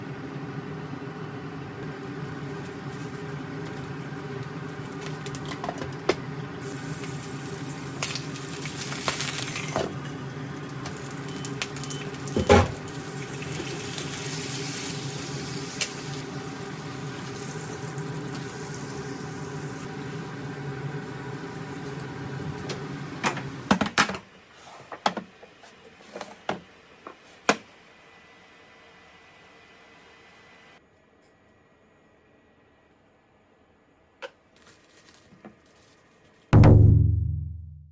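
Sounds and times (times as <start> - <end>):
steady kitchen hum: 0.0 - 36.6.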